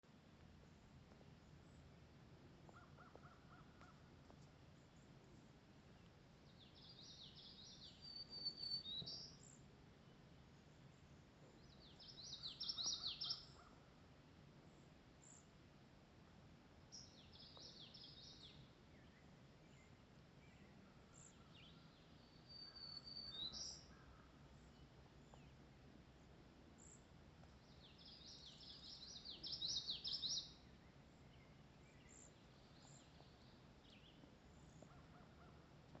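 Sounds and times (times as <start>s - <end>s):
songbird singing high song: 5.9s - 9.7s, 10.9s - 13.7s, 16.9s - 25.8s, 26.8s - 34.8s.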